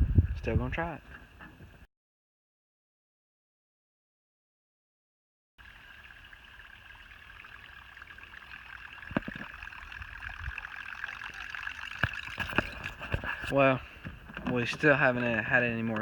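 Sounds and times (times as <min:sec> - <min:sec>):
water: 0:05.6 - 0:16.0.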